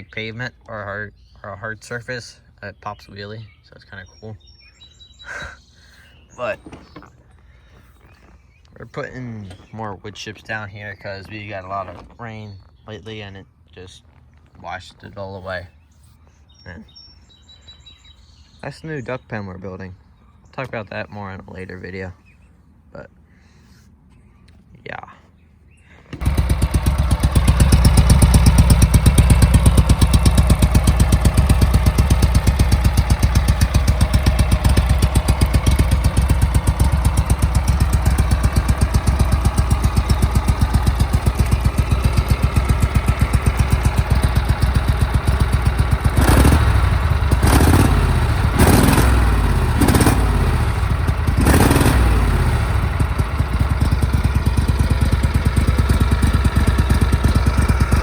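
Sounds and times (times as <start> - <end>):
tractor engine running: 6.3 - 12.2, 26.1 - 58.0
clattering knocks: 6.5 - 7.3.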